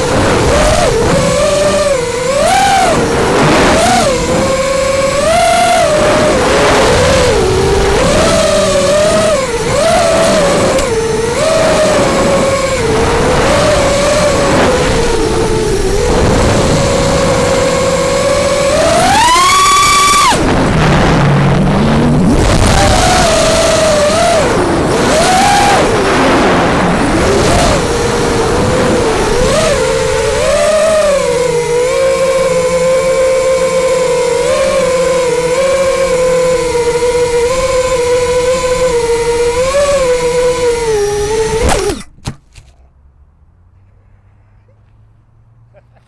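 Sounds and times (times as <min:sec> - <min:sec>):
rush of air noise: 0:00.0 - 0:42.0
quadcopter motors whining: 0:00.0 - 0:42.3.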